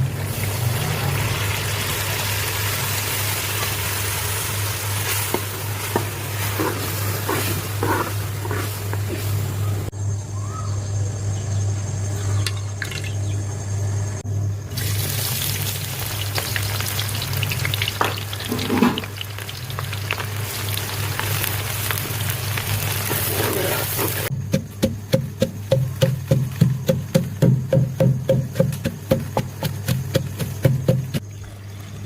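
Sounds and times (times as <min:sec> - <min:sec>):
food frying in hot oil: 0:00.0 - 0:09.3, 0:14.7 - 0:24.3.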